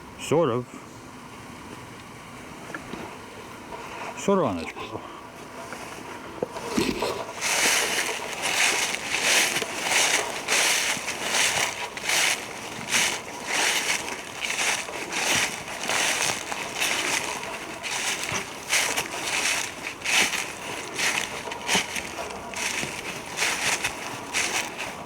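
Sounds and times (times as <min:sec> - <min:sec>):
footsteps crunching dry leaves: 0:06.6 - 0:25.0.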